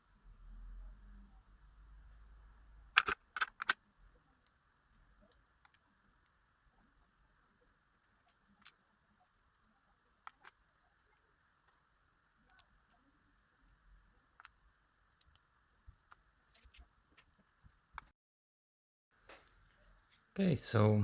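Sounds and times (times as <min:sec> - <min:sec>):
padlock pins clicking: 0:03.0 - 0:03.8.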